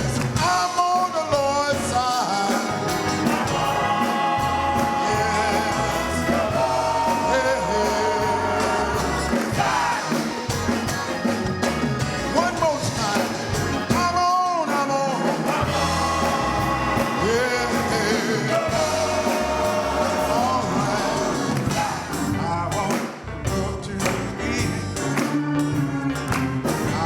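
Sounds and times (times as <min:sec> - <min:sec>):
gospel singing: 0:00.0 - 0:27.0
instrumental accompaniment with beat: 0:00.0 - 0:27.0.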